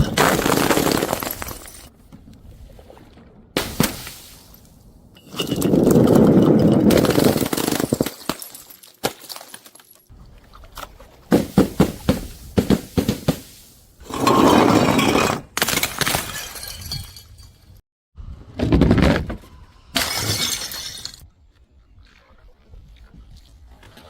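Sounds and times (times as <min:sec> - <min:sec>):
glass smashing: 0:00.0 - 0:01.9, 0:06.7 - 0:10.1, 0:14.2 - 0:17.7, 0:20.0 - 0:21.2.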